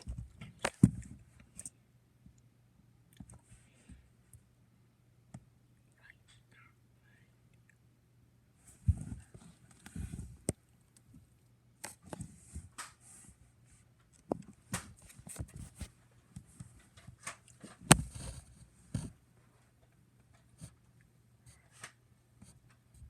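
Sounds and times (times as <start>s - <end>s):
handling bumps and knocks: 8.7s - 10.4s.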